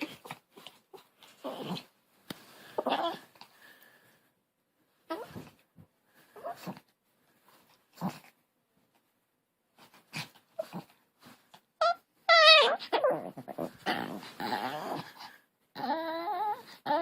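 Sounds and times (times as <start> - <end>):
dog growl-like vocalising: 1.4 - 1.9, 12.5 - 17.0
dog high-pitched call: 11.8 - 12.9
dog grunting: 12.8 - 17.0.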